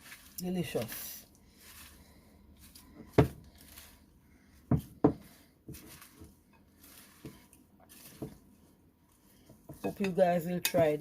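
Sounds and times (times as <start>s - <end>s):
rustling of leaves: 0.0s - 4.1s, 5.4s - 8.3s.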